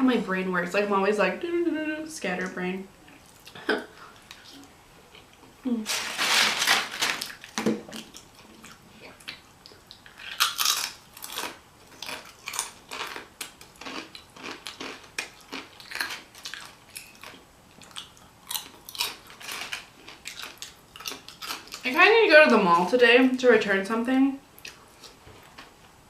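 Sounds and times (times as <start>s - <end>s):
close chewing and biting: 7.2s - 21.9s.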